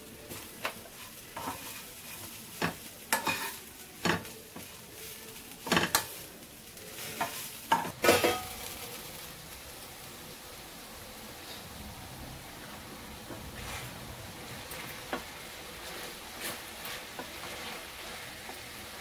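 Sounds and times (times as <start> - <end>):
food sizzling: 0.0 - 19.0
spoon scraping in cooking pan: 0.2 - 8.8, 14.6 - 19.0.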